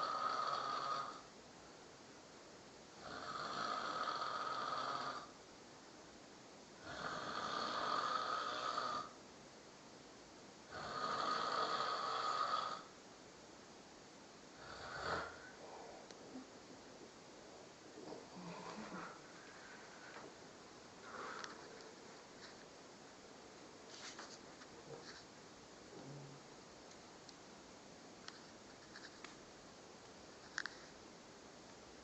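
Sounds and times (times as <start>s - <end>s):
person snoring: 0.0s - 1.3s, 3.0s - 5.4s, 6.8s - 9.2s, 10.7s - 12.9s, 14.6s - 16.4s, 18.0s - 20.2s, 21.0s - 21.7s.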